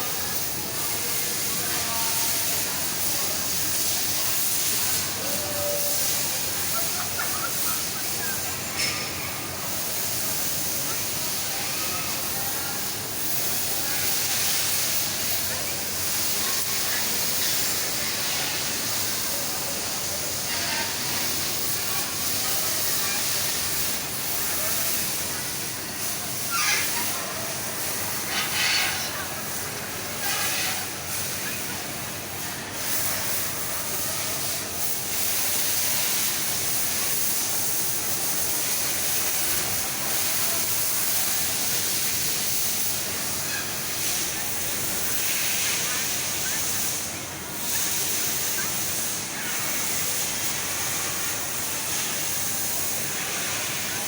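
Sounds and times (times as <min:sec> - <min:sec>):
conveyor machinery hissing: 0:00.0 - 0:54.0.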